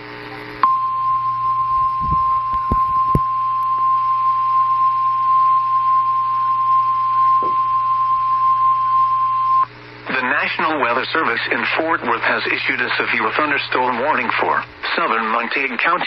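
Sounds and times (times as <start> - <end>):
radio hum and static: 0.0 - 16.0
loud high alarm tone: 0.6 - 9.7
low thumps: 1.8 - 3.3.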